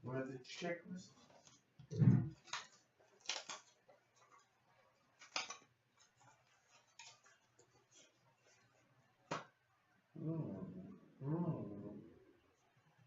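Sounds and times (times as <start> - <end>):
cardboard and wrapper rustling: 1.1 - 9.0
low thump: 1.9 - 2.3.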